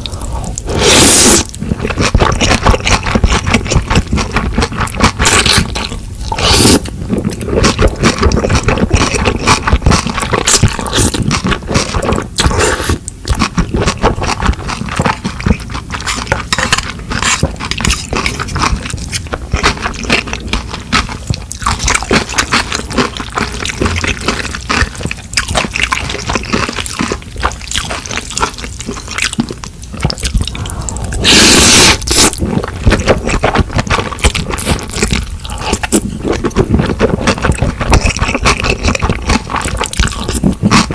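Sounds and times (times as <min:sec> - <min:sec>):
wet chewing and mouth noises: 0:00.0 - 0:40.9
loud burst of noise: 0:30.6 - 0:32.4.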